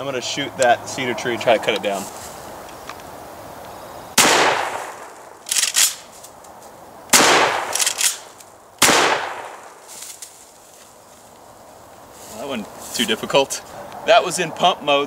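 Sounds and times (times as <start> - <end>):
shotgun shots echoing: 4.2 - 6.0, 7.1 - 9.8
shotgun pump racking clack: 5.4 - 6.0, 7.7 - 8.2.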